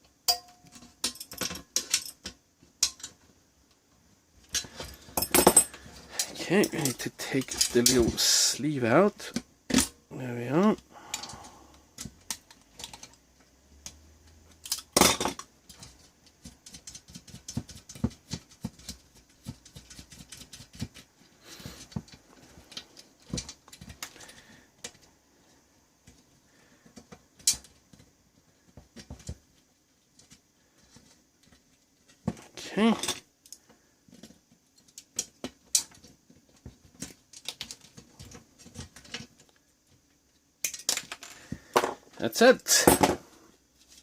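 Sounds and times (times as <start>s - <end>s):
small metal parts clattering: 0.3s - 3.2s, 4.4s - 10.0s, 14.5s - 19.0s, 40.0s - 42.1s.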